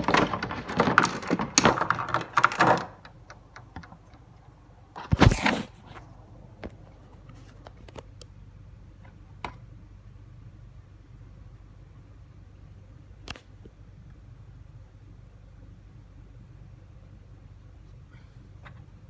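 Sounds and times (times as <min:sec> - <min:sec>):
box rustling scrape: 0:05.0 - 0:06.1.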